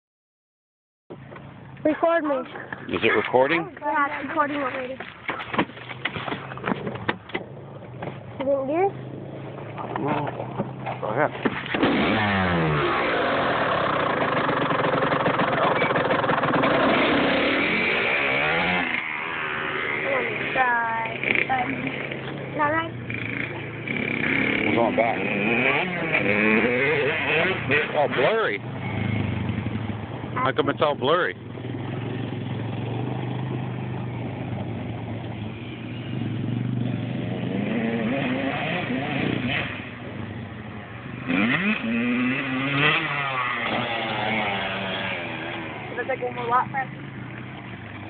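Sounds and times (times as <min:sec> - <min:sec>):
dirt bike engine revving: 0:09.1 - 0:48.0.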